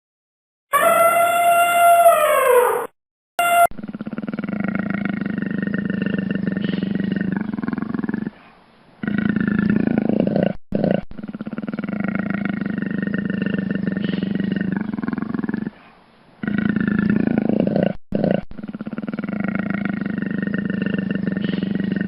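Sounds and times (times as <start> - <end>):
large animal roaring: 3.8 - 8.4, 9.0 - 10.6, 11.3 - 15.8, 16.4 - 22.0.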